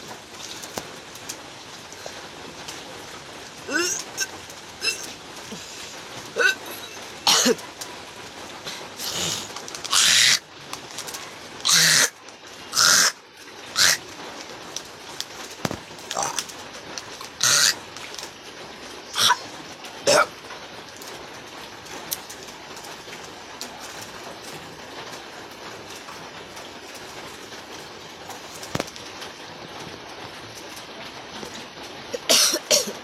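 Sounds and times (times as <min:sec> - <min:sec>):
heavy rain: 0:00.0 - 0:33.0
person retching and coughing: 0:03.7 - 0:05.1, 0:06.4 - 0:07.6, 0:20.0 - 0:20.3, 0:32.1 - 0:33.0.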